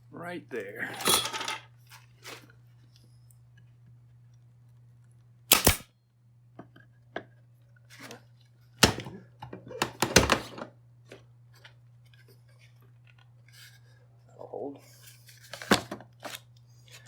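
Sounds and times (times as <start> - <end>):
pin nailer firing clacks: 5.5 - 5.8.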